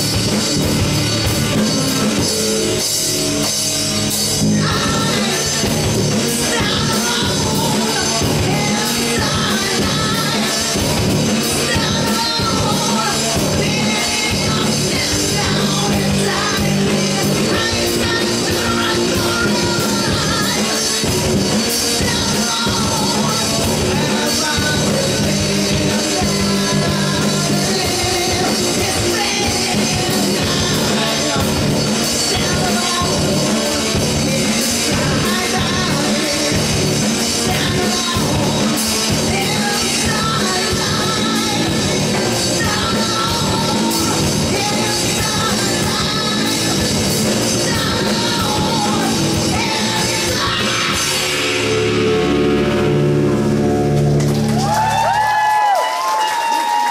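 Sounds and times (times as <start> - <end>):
drums beat: 0.0 - 56.9
electric guitars and bass: 0.0 - 56.9
person singing: 4.3 - 53.2
sustained guitar chords: 45.5 - 54.7.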